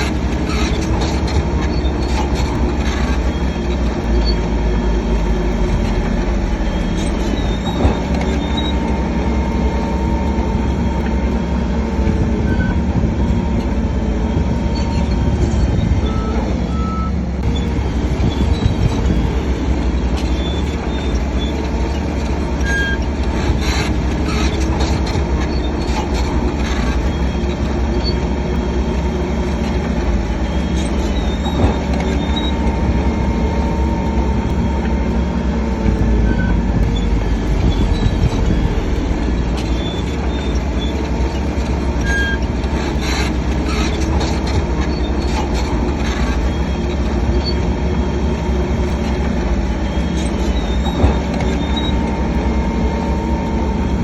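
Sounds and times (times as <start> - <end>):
bulldozer diesel engine running: 0.0 - 54.0
steel tracks clanking and squealing: 0.0 - 54.0.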